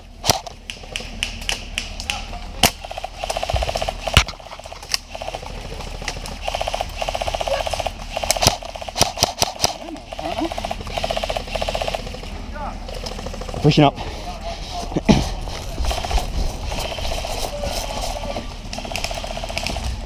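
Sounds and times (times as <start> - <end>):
airsoft guns full-auto bursts: 2.6 - 12.3, 15.8 - 17.5, 18.7 - 20.0
single sharp shots: 8.2 - 9.9.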